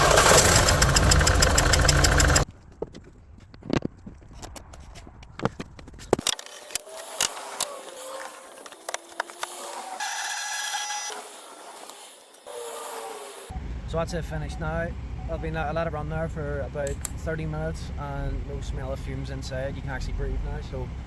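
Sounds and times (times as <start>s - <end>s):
car engine running with ticking: 0.0s - 2.5s.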